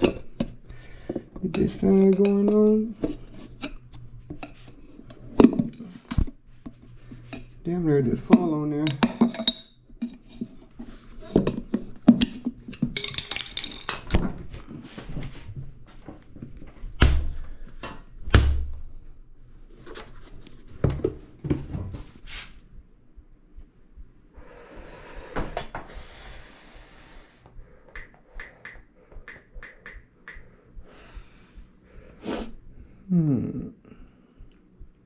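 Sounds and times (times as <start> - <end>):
heavy thumps: 20.8 - 26.9.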